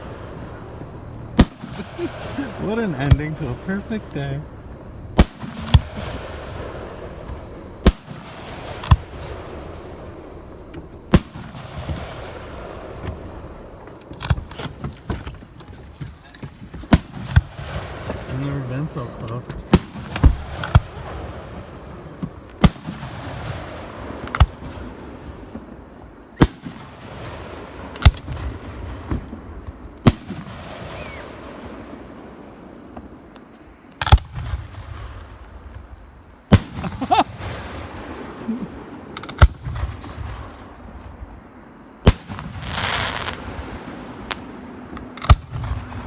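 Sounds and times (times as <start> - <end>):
fireworks bursting: 0.0 - 33.4, 34.0 - 41.3, 42.0 - 46.0
insects chirring: 0.0 - 46.0.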